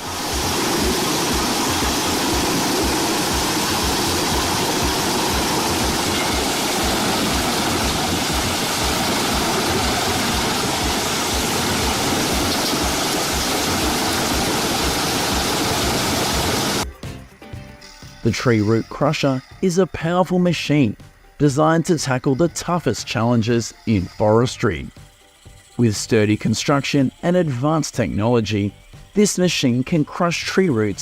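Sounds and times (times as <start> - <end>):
wood chipper chipping wood: 0.0 - 16.8.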